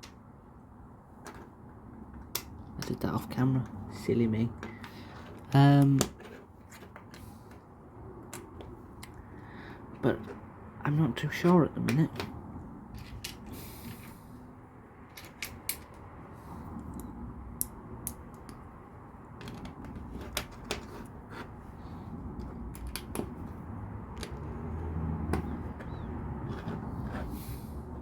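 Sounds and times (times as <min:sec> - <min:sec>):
plastic pieces clicking together: 0:22.4 - 0:23.4.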